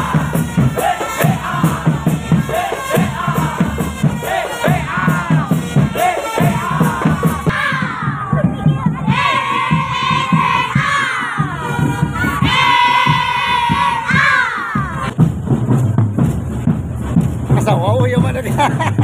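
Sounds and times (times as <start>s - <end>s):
wind instruments holding notes: 0.0s - 15.2s
marching drums beating: 0.0s - 19.0s.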